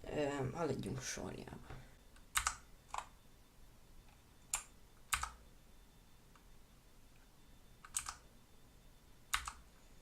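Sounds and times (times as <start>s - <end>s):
clicky keyboard keystrokes: 2.2s - 3.1s, 4.1s - 5.4s, 7.8s - 8.2s, 9.3s - 9.6s.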